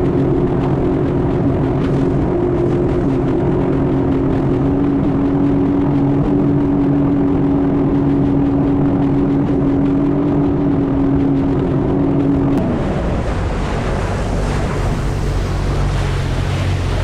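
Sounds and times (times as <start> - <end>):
rushing wind and water: 0.0 - 17.0
watercraft engine running: 0.0 - 17.0.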